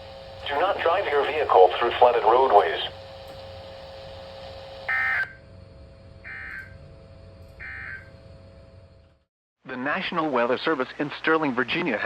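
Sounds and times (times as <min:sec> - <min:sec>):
faint hum and hiss: 0:00.0 - 0:09.1.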